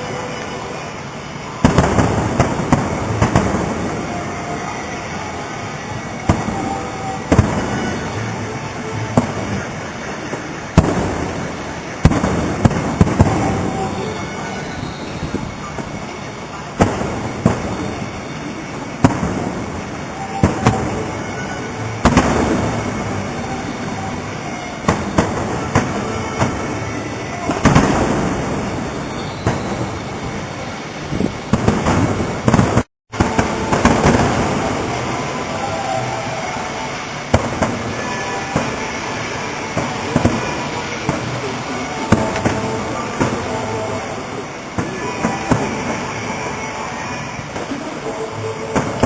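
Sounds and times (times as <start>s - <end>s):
fireworks booming: 0.0s - 49.0s
rolling rumble: 0.0s - 49.0s.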